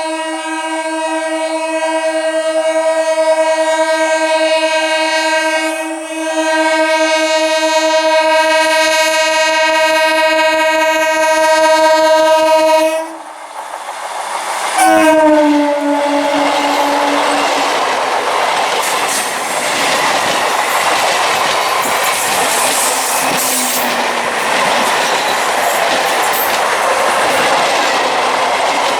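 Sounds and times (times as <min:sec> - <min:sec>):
train horn blast: 0:00.0 - 0:13.3, 0:14.8 - 0:17.8
train running noise: 0:00.0 - 0:28.9.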